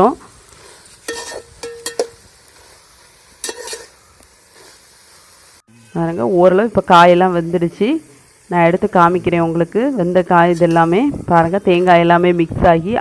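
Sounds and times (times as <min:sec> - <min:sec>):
faint sizzle of vegetables: 0:00.0 - 0:13.0
spoon stirring in a pan: 0:00.6 - 0:04.9
spoon scraping and clinking pan: 0:01.0 - 0:02.2, 0:03.4 - 0:04.0.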